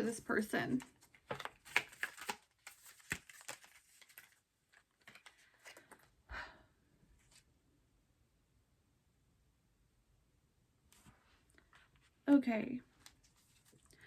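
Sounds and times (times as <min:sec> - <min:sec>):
cards flicking and rustling: 0:00.8 - 0:06.1.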